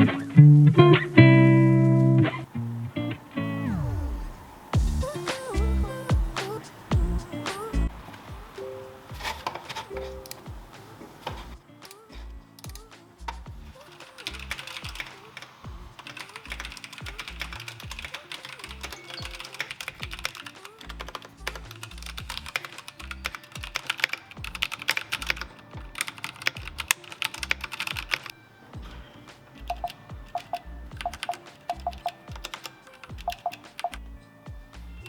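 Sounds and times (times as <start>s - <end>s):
background music with bass: 0.0s - 8.0s, 11.3s - 15.0s, 15.6s - 19.0s, 20.0s - 23.4s, 24.4s - 26.0s, 26.6s - 27.8s, 28.8s - 35.0s
mechanical keyboard key clacks: 13.9s - 28.3s, 29.7s - 34.0s.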